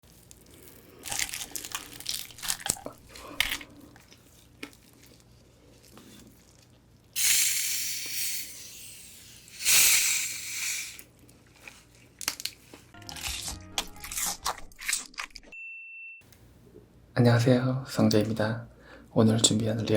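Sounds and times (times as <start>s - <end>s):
plastic packaging crinkling: 0.0s - 6.8s, 11.1s - 15.5s.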